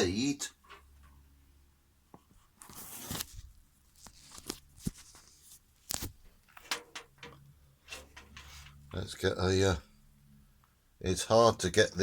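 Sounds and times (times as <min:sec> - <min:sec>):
rustling scrapes: 0:07.8 - 0:08.9.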